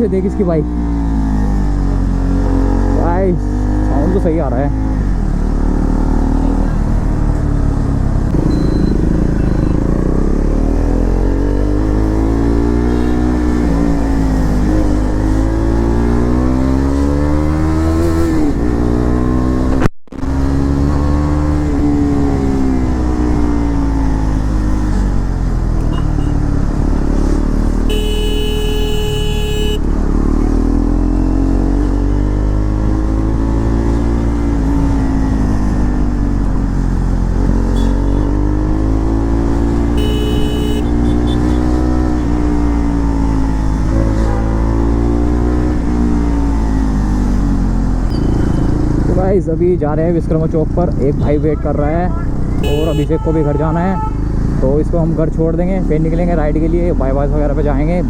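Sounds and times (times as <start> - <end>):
motorcycle engine revving: 0.0 - 49.4
horn: 27.9 - 29.8.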